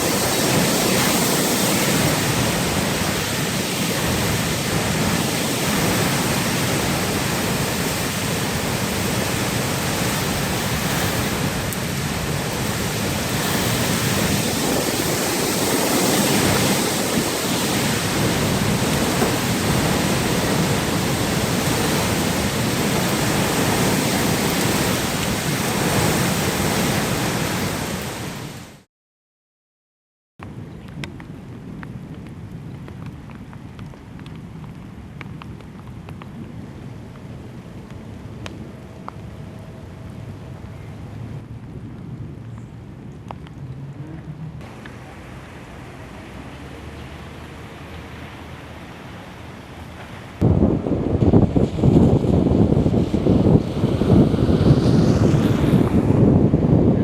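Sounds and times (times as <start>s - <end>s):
storm winds blowing hard: 0.0s - 28.8s, 48.6s - 57.0s.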